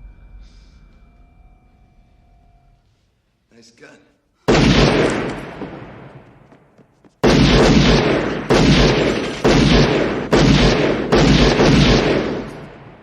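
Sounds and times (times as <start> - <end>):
handgun shots echoing: 4.5 - 6.6, 7.2 - 13.0.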